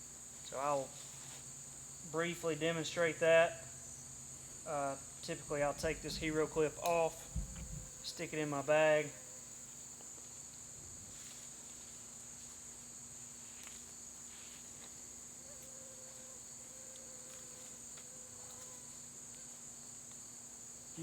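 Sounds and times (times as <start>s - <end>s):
crickets chirping: 0.0s - 21.0s
faint rustles and clicks: 5.5s - 8.2s.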